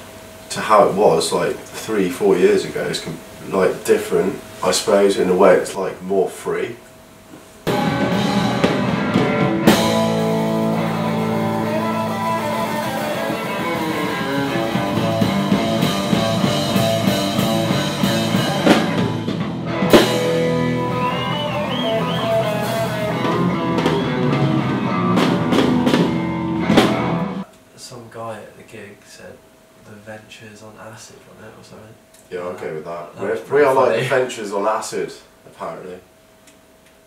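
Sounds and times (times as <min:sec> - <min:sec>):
loud drum hits: 0:07.7 - 0:11.6, 0:14.7 - 0:20.9, 0:21.7 - 0:27.4
surf rock band music: 0:07.7 - 0:27.4.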